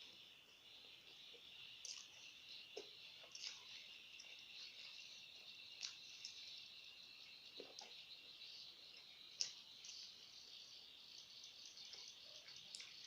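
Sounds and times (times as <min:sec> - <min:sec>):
faint high-pitched hiss: 0:00.0 - 0:13.0
chewing and mouth clicks: 0:01.8 - 0:02.2, 0:02.8 - 0:05.1, 0:05.8 - 0:06.5, 0:07.5 - 0:08.0, 0:09.4 - 0:10.0, 0:11.4 - 0:13.0.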